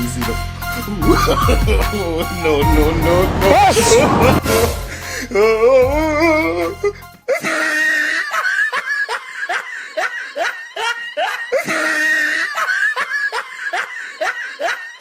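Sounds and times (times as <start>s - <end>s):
person laughing hard: 1.1s - 1.8s.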